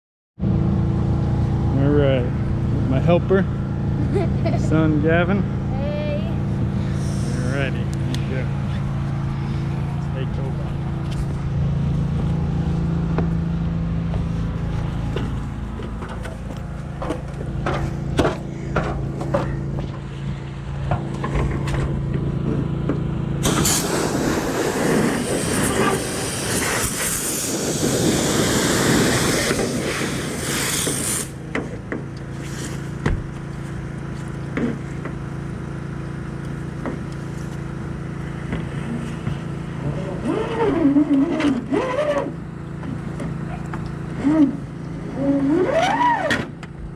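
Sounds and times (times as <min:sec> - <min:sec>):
pressure washer engine humming: 0:00.4 - 0:46.0
water spraying on metal roof: 0:23.4 - 0:33.7.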